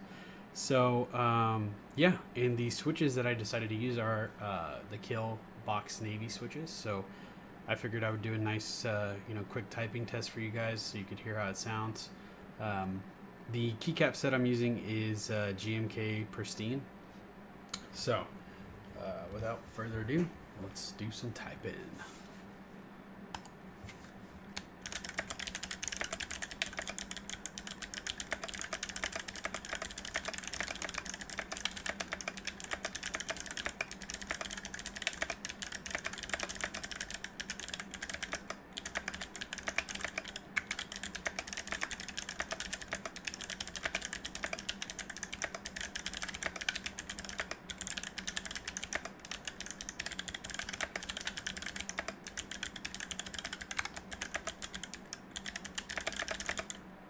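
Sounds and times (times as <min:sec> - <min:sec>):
clicky mechanical keyboard typing: 0:24.6 - 0:56.8.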